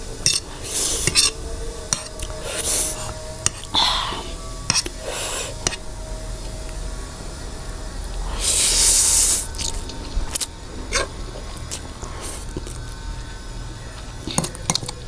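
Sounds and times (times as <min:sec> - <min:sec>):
cutlery clicks: 0:00.2 - 0:02.3
hissing mouth sound: 0:00.4 - 0:01.4, 0:02.0 - 0:05.9, 0:08.2 - 0:12.9.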